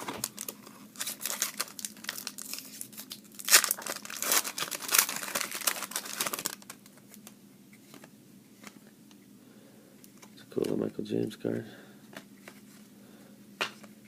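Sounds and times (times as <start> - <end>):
foil wrapper tearing and crinkling: 0.2 - 6.8.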